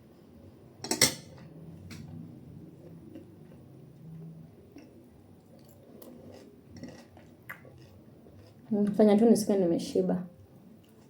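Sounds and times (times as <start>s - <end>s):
low steady hum: 0.0s - 11.0s
cutlery clicking: 0.8s - 1.3s.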